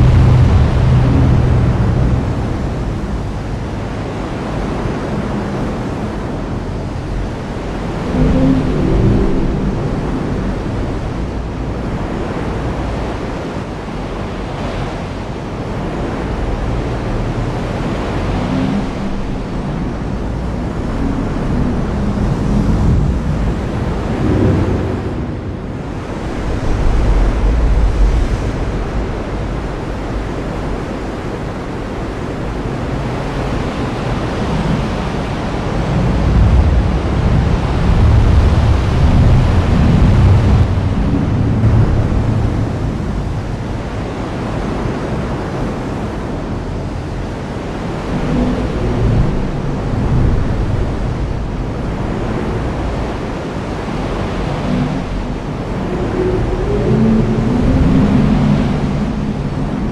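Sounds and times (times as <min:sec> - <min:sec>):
rolling thunder: 0:00.0 - 0:03.6.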